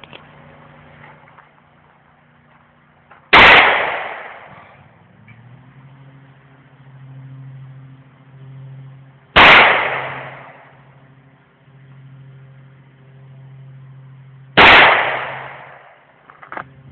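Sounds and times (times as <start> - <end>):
low steady hum: 0.0 - 16.9
loud gunshot with echo: 3.3 - 4.8, 9.4 - 10.6, 14.6 - 15.9.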